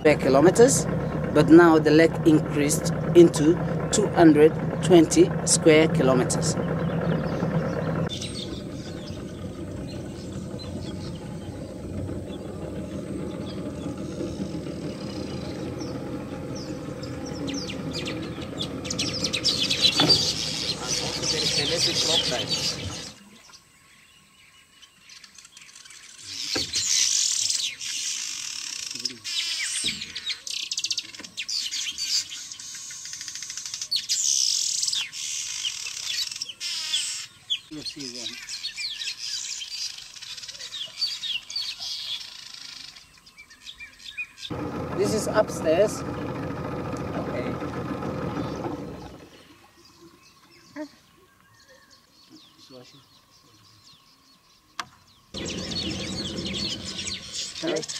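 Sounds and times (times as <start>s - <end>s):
boat motor humming: 0.0s - 23.2s, 44.5s - 49.6s, 55.3s - 57.9s
small birds chirping: 0.0s - 57.9s.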